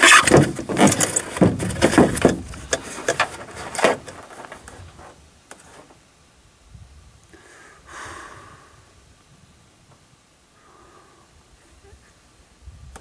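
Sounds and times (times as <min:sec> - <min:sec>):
handling knocks and clicks: 0:00.0 - 0:06.0.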